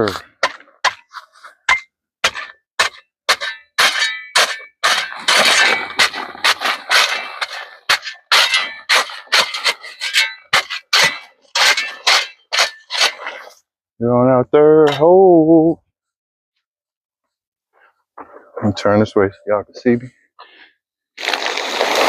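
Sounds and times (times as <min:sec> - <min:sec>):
digging tool clinking on rocky ground: 0:01.7 - 0:13.2.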